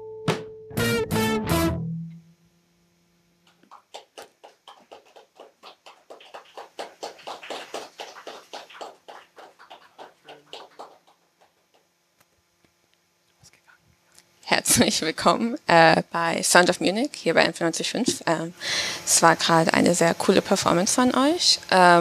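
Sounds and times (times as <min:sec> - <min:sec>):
electric guitar chord ringing: 0:00.0 - 0:03.2
people clapping: 0:03.4 - 0:11.9.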